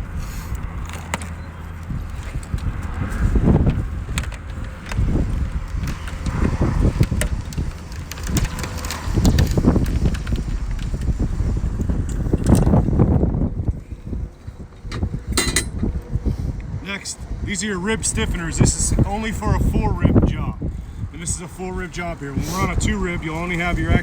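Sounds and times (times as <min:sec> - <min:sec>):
wind buffeting microphone: 0:00.0 - 0:24.0
light clicks and knocks of parts: 0:00.5 - 0:11.1.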